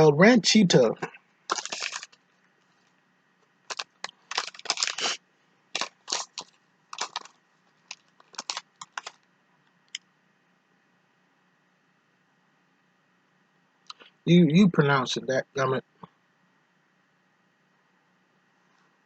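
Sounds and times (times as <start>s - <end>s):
crunchy eating: 1.0s - 2.2s, 3.7s - 5.2s, 5.8s - 9.2s.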